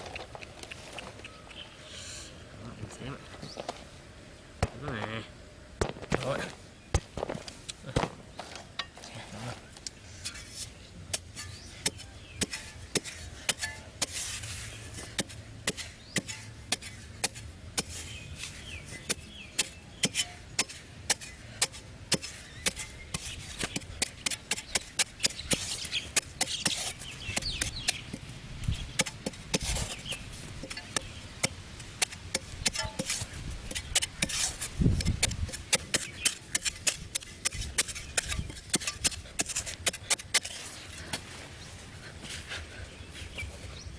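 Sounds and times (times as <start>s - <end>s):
wood being chopped: 5.8s - 8.6s.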